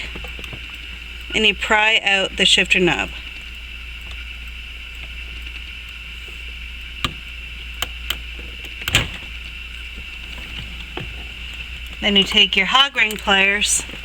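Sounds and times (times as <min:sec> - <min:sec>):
steady hum: 0:00.0 - 0:14.0
sharp plastic clicks: 0:07.0 - 0:09.5.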